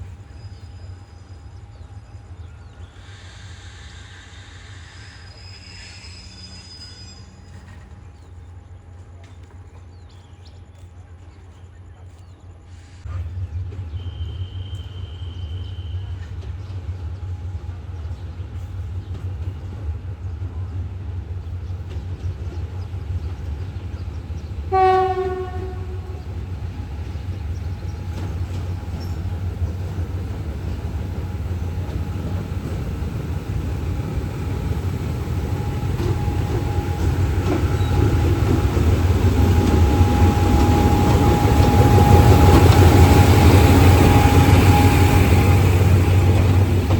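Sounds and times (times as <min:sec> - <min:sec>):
diesel train rumbling: 0:11.0 - 0:46.9
high whistle: 0:13.9 - 0:16.2
train horn blast: 0:24.6 - 0:27.0, 0:35.6 - 0:46.9.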